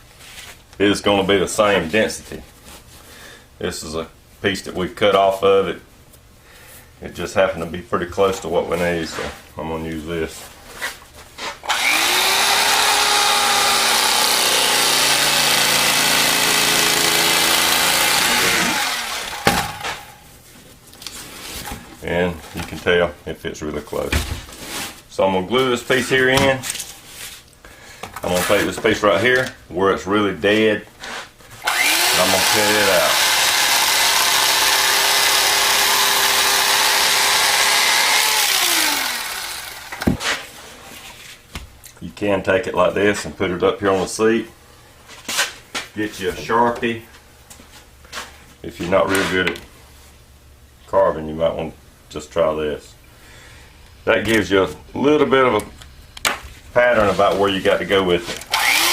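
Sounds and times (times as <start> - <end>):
electric knife motor whirring: 11.7 - 20.0, 31.6 - 40.2, 58.5 - 58.9.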